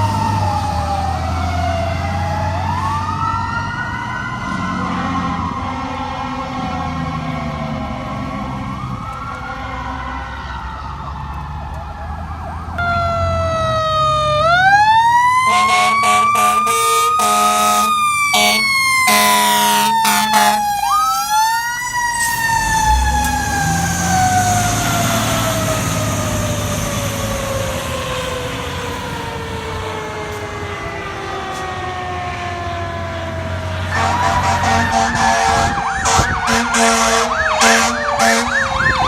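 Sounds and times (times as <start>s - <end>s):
fire truck siren wailing: 0.0s - 39.0s
truck engine rumbling: 0.0s - 39.0s
air horn blasts: 15.4s - 20.8s, 33.9s - 39.0s.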